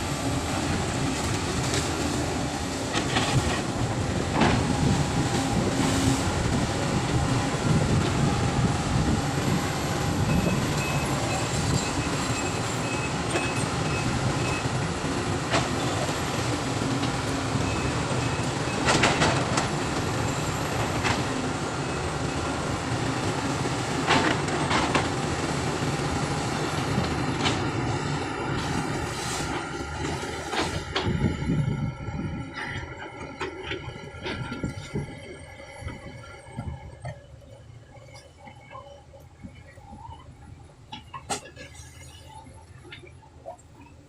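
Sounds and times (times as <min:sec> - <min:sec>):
excavator diesel engine: 0:00.0 - 0:44.0.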